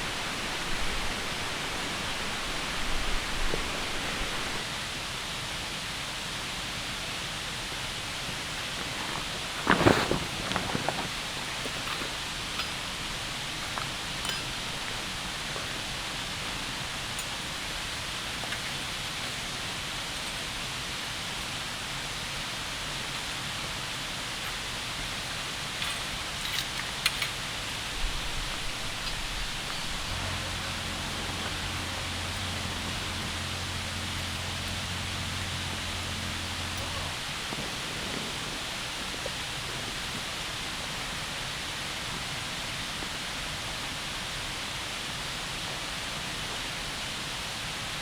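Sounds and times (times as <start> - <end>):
low steady hum: 0.0 - 4.8, 25.8 - 42.2
water rushing: 0.0 - 6.0, 6.8 - 26.5, 27.5 - 48.0.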